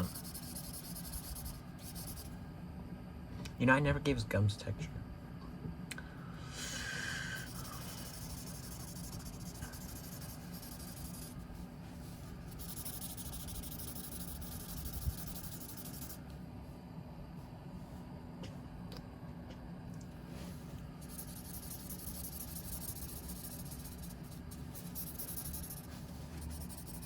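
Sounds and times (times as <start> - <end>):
drawing tool scraping paper: 0.0 - 2.3, 7.4 - 11.4, 12.5 - 16.2, 21.0 - 27.0.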